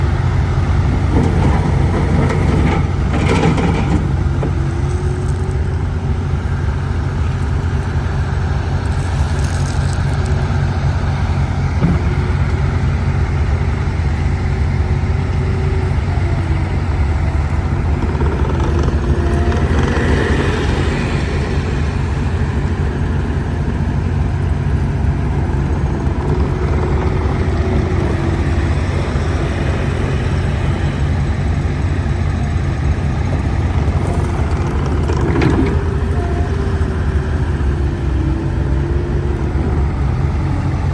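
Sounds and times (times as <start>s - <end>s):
loader diesel engine running: 0.0s - 40.9s.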